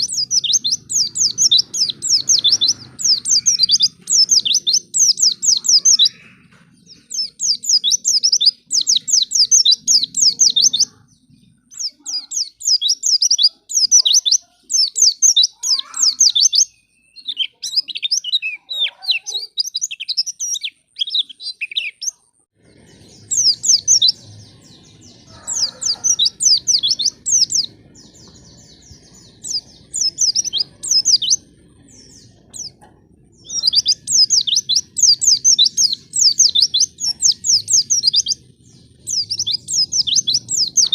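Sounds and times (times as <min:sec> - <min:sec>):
bird twittering chirps: 0:00.0 - 0:40.9
low background rumble: 0:22.5 - 0:40.9.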